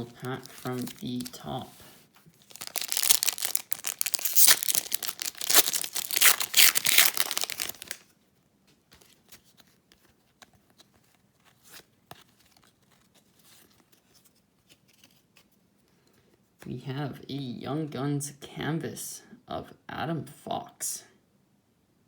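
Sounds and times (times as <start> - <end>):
wrapper tearing and crinkling: 0.0 - 1.5, 2.4 - 8.0.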